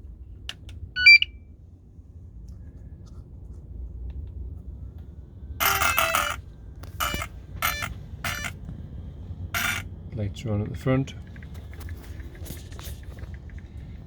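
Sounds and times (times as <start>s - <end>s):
electronic power-on beeps: 1.0s - 1.4s, 5.6s - 6.4s, 7.0s - 8.6s.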